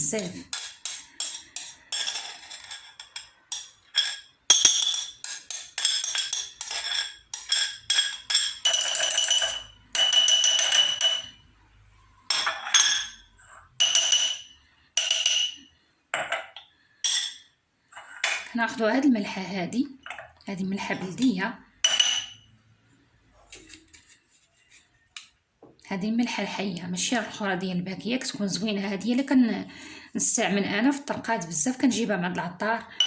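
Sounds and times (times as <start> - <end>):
metal spoon clinking on glass jar: 0.0 - 11.5, 12.3 - 17.5, 21.8 - 22.5.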